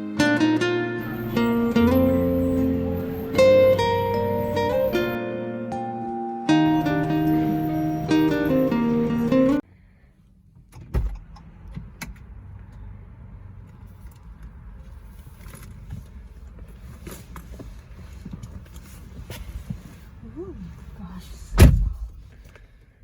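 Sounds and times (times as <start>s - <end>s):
vehicle low rumble: 0.4s - 5.3s, 6.5s - 23.0s
sharp thump: 21.5s - 22.2s.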